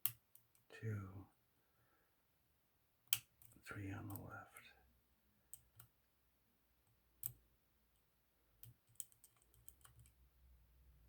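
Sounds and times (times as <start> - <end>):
lock pick metallic clicks: 8.6 - 10.2.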